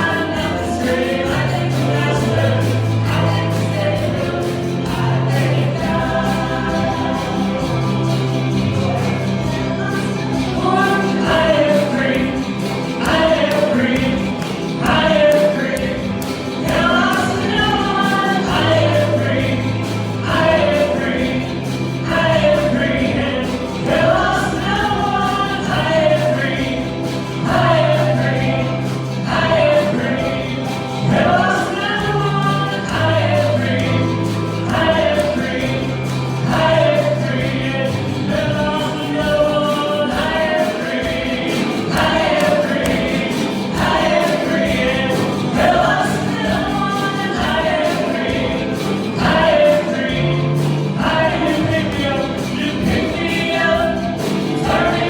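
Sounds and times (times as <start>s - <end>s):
group singing gospel: 0.0s - 55.0s
instrumental accompaniment: 0.0s - 55.0s.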